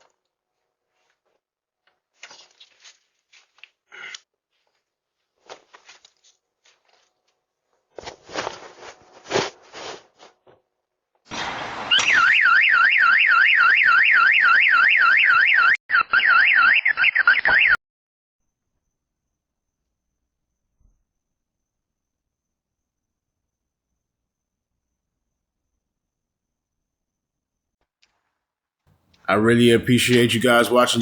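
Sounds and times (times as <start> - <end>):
car alarm siren warbling: 11.9 - 17.8.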